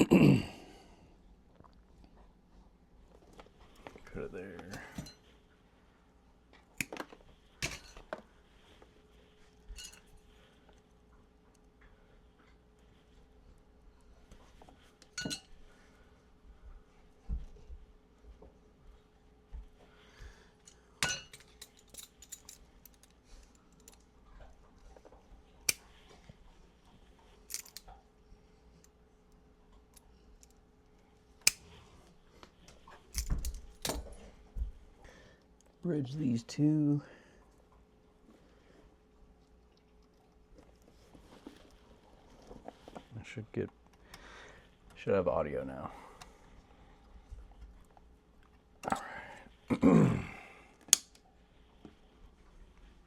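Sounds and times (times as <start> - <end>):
hand tools clicking and clinking: 9.7 - 10.1, 20.6 - 24.0, 27.4 - 27.9
small tools clicking and tapping: 27.4 - 28.0.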